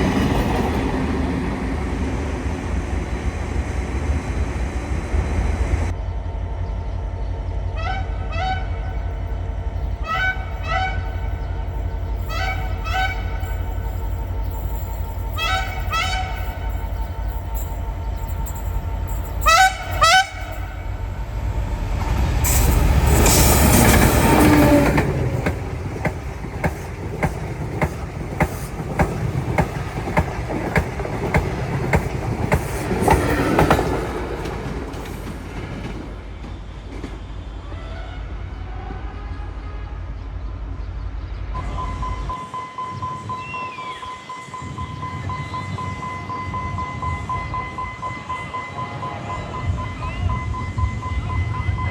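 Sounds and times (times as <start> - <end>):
train rushing by: 0.0 - 39.2
train horn blasts: 7.7 - 9.1, 9.8 - 34.7.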